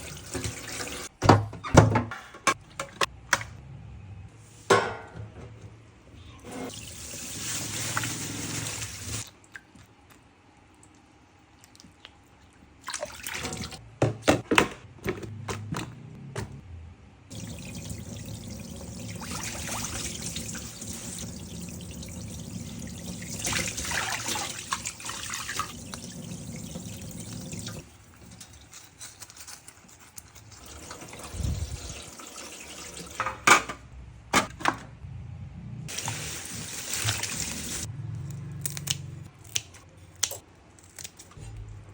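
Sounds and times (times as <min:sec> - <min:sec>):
tap water running into sink: 0:00.0 - 0:01.1, 0:17.3 - 0:28.4, 0:30.5 - 0:33.5, 0:35.9 - 0:37.9.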